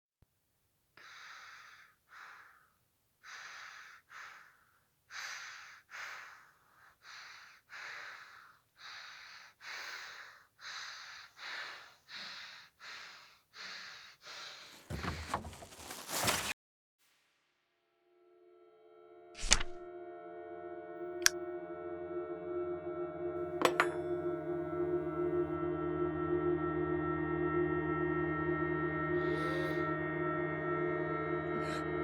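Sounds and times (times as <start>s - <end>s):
person breathing heavily: 1.0s - 16.4s, 29.2s - 29.9s.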